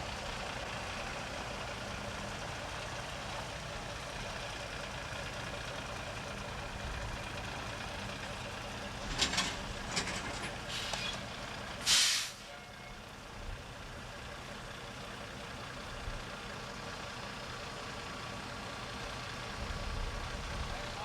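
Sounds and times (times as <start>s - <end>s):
truck engine idling: 0.0s - 21.0s
air brakes hissing: 10.6s - 12.6s.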